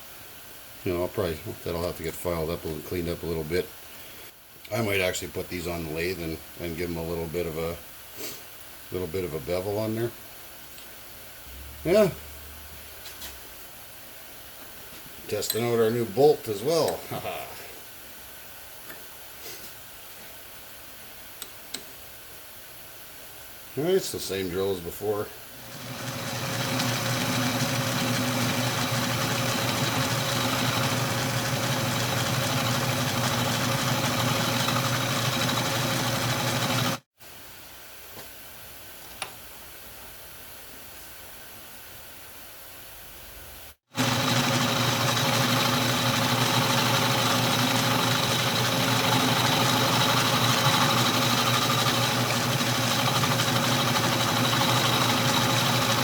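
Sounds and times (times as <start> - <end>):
metal lathe milling: 25.6 - 37.0, 44.0 - 56.0.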